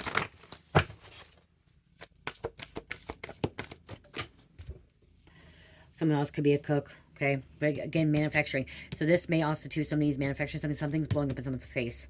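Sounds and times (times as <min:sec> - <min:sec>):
cards being shuffled: 0:00.0 - 0:01.4, 0:02.0 - 0:04.4.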